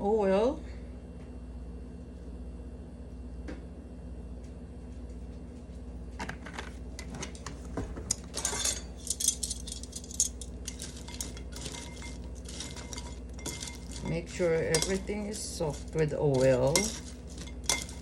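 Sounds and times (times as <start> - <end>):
utensil scraping and clinking dish: 7.0 - 18.0.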